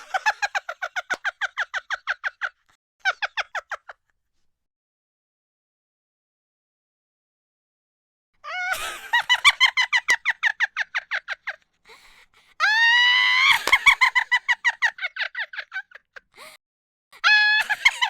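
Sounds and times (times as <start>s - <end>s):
high-pitched cackling laugh: 0.0s - 4.2s, 8.5s - 11.7s, 12.8s - 16.3s, 17.2s - 18.0s.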